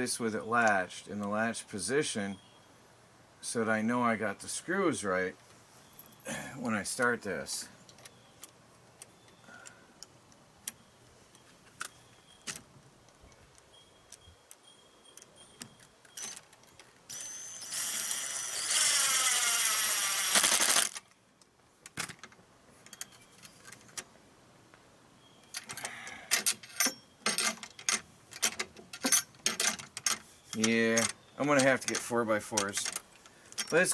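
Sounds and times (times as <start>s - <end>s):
power drill driving screw: 17.1s - 21.0s
latch hardware clicks and rattles: 25.6s - 33.9s.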